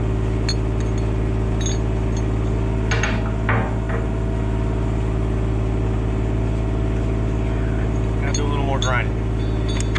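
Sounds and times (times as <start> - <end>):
engine idling: 0.0 - 9.9
clinks and knocks: 0.4 - 4.2, 7.9 - 9.9.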